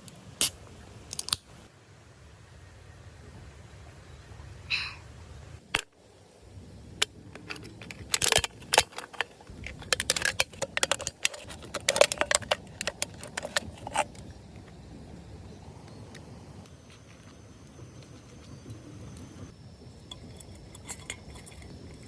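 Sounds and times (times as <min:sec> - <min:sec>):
small hard objects clicking: 0:07.0 - 0:14.3.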